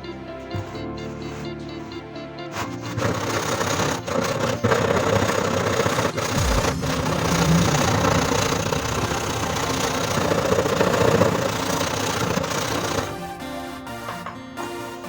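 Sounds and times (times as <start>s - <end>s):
background music: 0.0s - 15.0s
motor running roughly: 2.7s - 13.2s.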